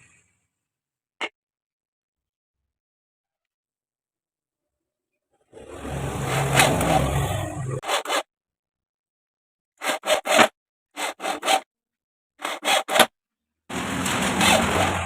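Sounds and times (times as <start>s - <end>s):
wood lathe humming: 5.6s - 7.8s, 13.7s - 15.0s
tool scraping on wood: 5.6s - 8.3s, 9.8s - 11.6s, 12.4s - 13.1s, 13.7s - 15.0s.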